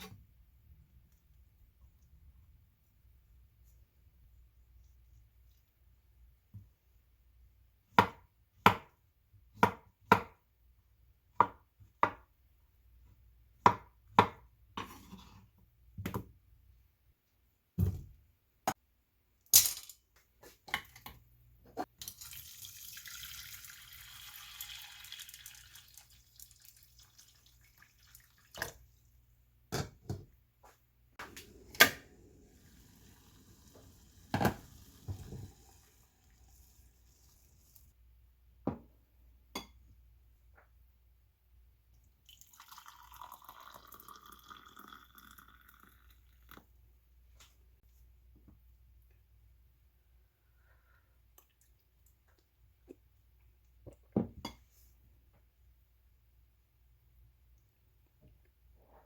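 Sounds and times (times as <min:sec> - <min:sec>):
running water: 0:22.0 - 0:28.9.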